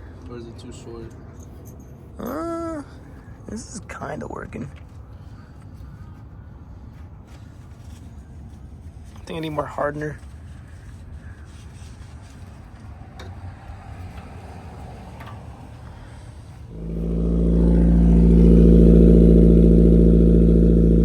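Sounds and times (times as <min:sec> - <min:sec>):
car engine cold-starting: 0:14.0 - 0:21.0
engine running at fast idle: 0:15.2 - 0:21.0.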